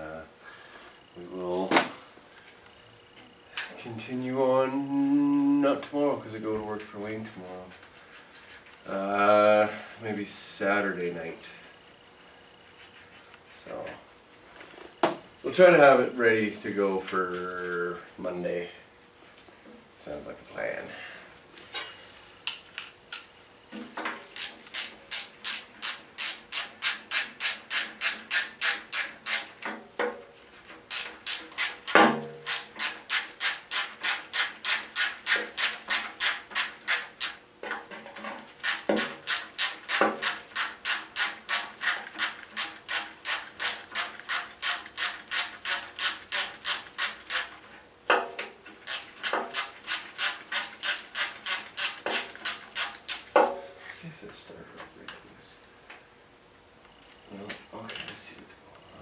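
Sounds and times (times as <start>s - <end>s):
socket ratchet clicking: 24.4s - 29.7s, 30.9s - 37.4s, 38.6s - 47.6s, 48.8s - 53.3s.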